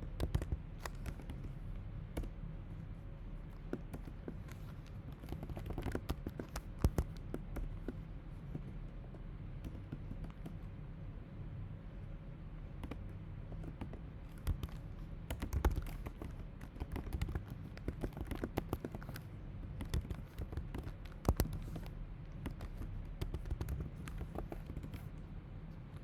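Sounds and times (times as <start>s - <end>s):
typing on computer keyboard: 0.0s - 1.6s, 3.5s - 8.0s, 12.8s - 25.2s
steady low hum: 0.0s - 26.0s.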